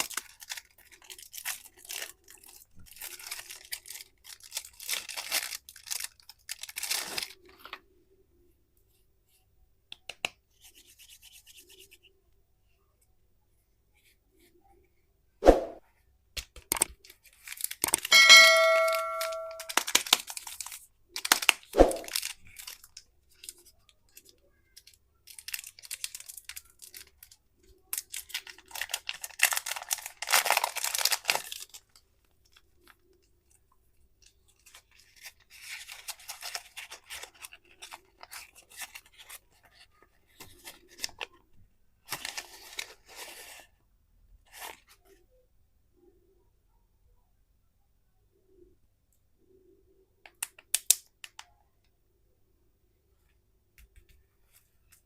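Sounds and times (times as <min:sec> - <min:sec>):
candy wrappers crinkling: 0:00.0 - 0:07.8, 0:16.7 - 0:18.2, 0:19.5 - 0:33.6, 0:34.2 - 0:43.7
short ringing ding: 0:18.1 - 0:19.7.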